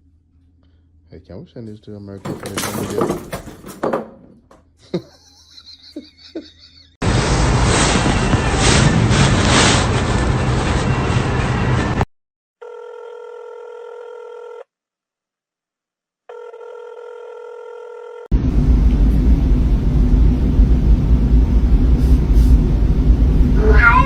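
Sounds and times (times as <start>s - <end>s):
telephone ringback tone: 12.6s - 14.6s, 16.3s - 18.2s
loud low rumbling: 18.3s - 24.0s.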